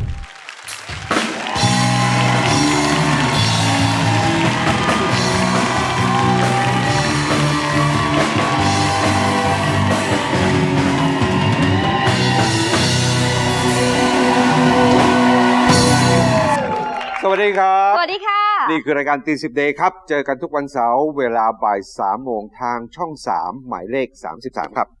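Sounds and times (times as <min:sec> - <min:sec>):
upbeat rock music: 0:01.1 - 0:17.2
short musical hit: 0:12.4 - 0:16.8.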